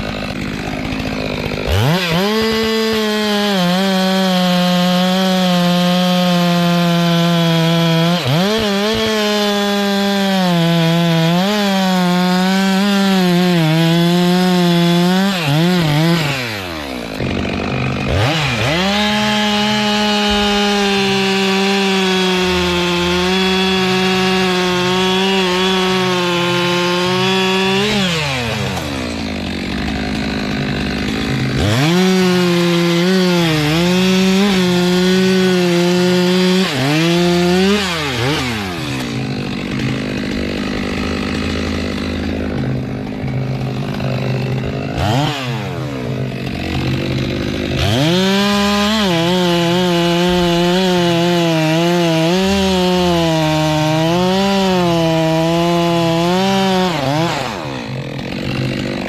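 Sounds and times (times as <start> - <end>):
chainsaw cutting wood: 0.0 - 59.0.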